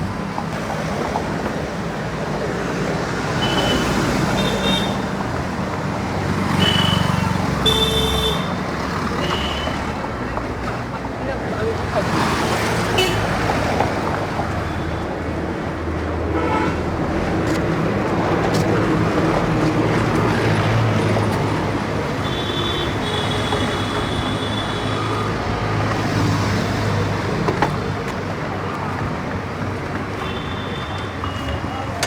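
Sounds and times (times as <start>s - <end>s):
street traffic road noise: 0.0s - 32.0s
high car horn: 3.4s - 5.1s, 6.6s - 8.6s, 16.3s - 16.8s, 22.2s - 25.1s, 30.2s - 31.6s.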